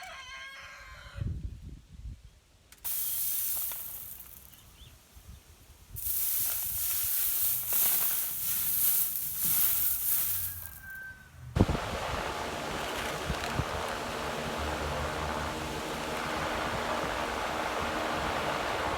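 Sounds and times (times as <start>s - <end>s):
wheat berries rustling through screen: 2.9s - 11.0s.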